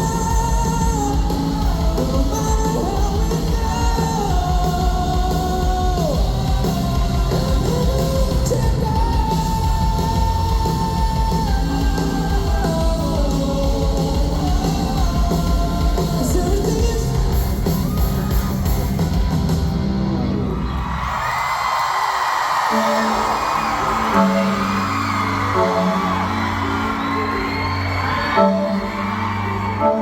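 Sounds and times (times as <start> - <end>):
person singing: 0.0 - 19.3
live rock band playing: 0.0 - 21.0, 22.6 - 30.0.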